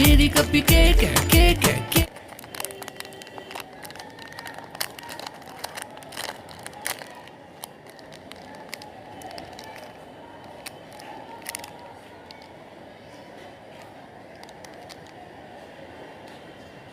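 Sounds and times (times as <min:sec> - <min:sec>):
candy wrappers crinkling: 0:01.7 - 0:12.6, 0:13.7 - 0:15.3.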